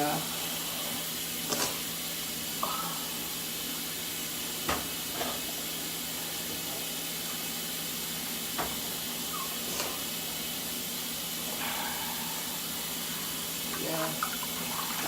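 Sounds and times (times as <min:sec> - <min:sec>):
tap water running into sink: 0:03.8 - 0:05.7, 0:13.6 - 0:15.0.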